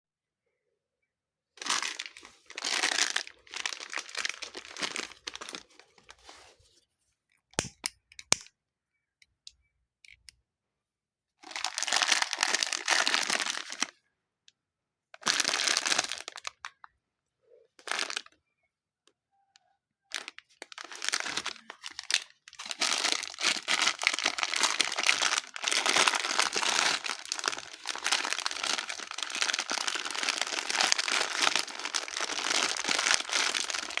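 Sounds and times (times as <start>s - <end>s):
slime squelching and crackling: 20.8s - 34.0s.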